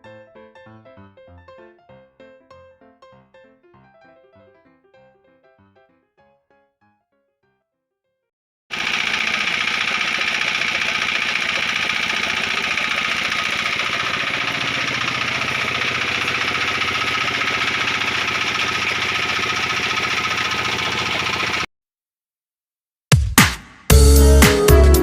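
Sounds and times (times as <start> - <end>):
engine running with fast knock: 8.7 - 21.7.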